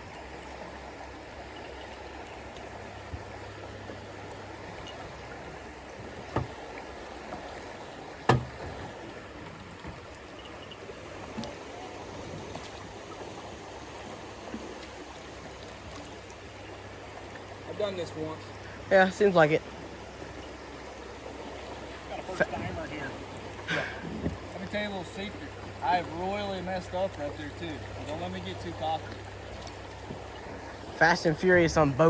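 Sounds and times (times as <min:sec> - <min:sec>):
river water rushing: 0:00.0 - 0:32.0
sharp knocks on boat: 0:03.0 - 0:10.4, 0:22.2 - 0:30.6.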